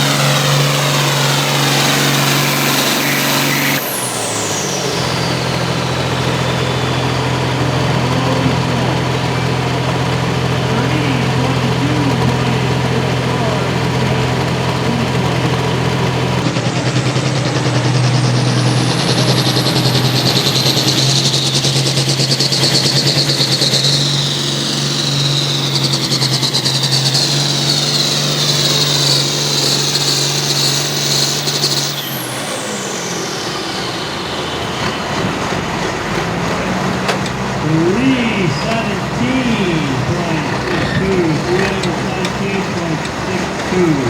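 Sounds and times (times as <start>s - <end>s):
tractor engine under load whining: 0.0s - 44.0s.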